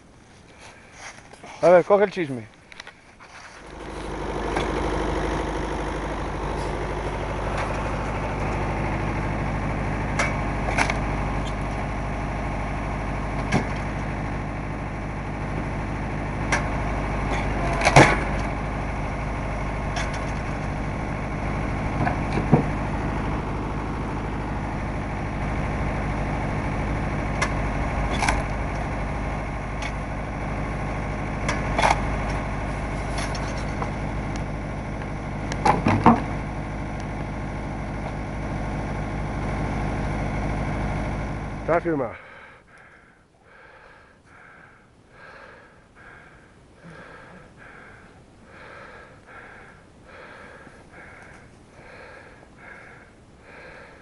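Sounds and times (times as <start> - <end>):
engine idling: 0.0 - 54.0.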